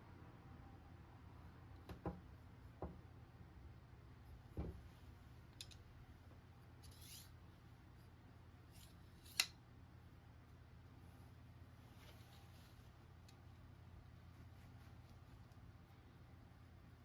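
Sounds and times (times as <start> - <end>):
soft knock: 1.9 - 2.2, 4.6 - 4.9.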